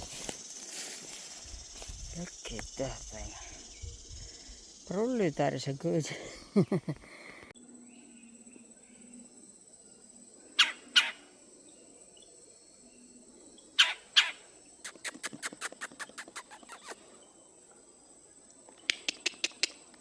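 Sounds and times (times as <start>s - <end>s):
high-pitched insect drone: 0.0s - 6.9s
sharp calls: 10.6s - 11.2s, 13.8s - 17.0s.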